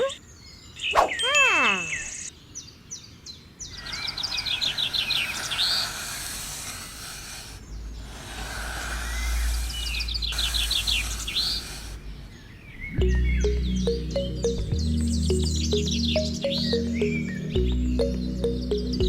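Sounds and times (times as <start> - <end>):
outdoor background hiss: 0.0 - 19.0
bird singing chirps and whistle: 12.6 - 19.0.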